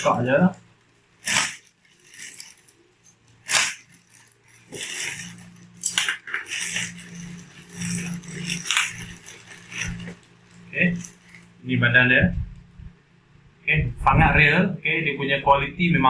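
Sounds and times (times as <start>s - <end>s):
plastic packaging crinkling: 0.0s - 11.6s.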